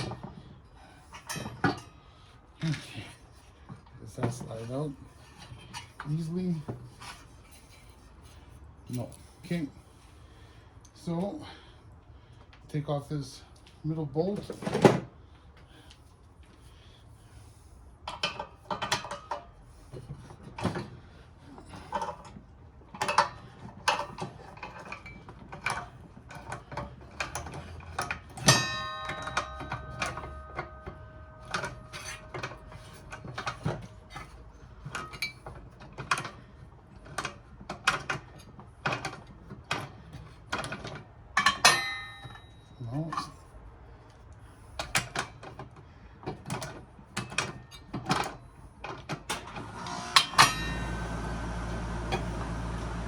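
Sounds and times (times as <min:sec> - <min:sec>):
ringing metal clang: 0:28.0 - 0:35.4, 0:41.4 - 0:42.8.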